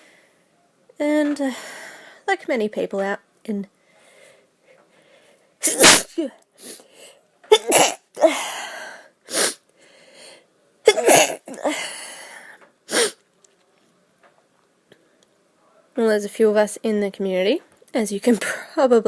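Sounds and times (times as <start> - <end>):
short breaths: 3.8 - 5.6, 8.3 - 10.5
woman sneezing: 5.6 - 6.8, 7.5 - 8.7, 9.3 - 9.6, 10.9 - 12.0, 12.9 - 13.2.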